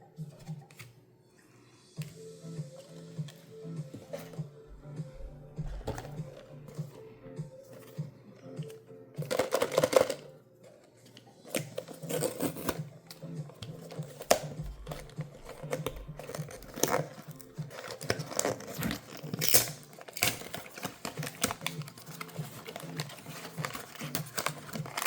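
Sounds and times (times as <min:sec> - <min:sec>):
packaging tearing and crinkling: 0:11.5 - 0:25.0.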